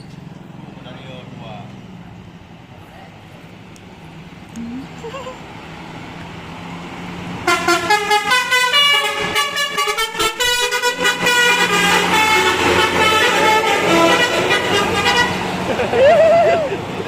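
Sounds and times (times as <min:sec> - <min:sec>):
bus engine hum: 0:00.0 - 0:17.0
musical bus air horn: 0:07.4 - 0:15.6.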